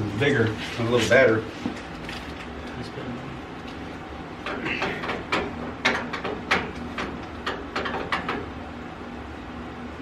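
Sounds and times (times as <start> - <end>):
tools knocking and clicking: 4.4 - 8.5.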